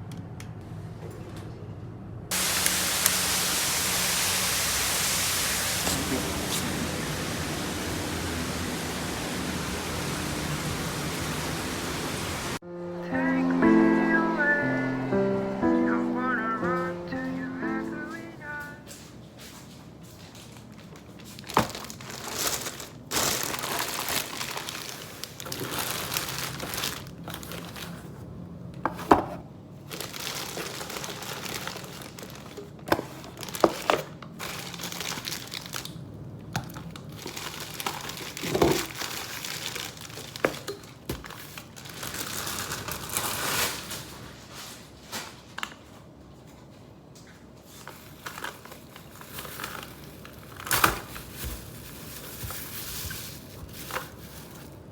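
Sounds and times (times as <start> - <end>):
packaging crinkling and rustling: 19.4 - 28.4, 29.0 - 54.9.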